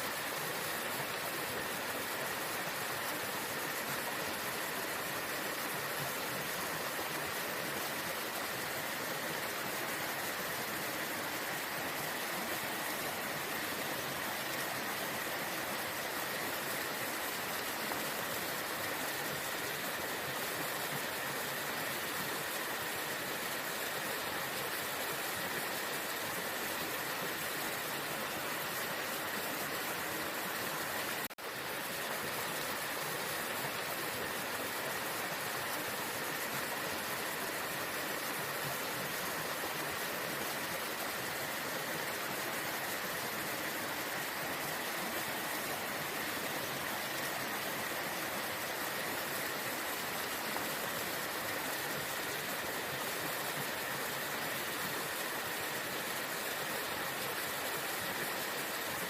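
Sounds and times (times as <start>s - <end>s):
waterfall rushing: 0.0s - 59.0s.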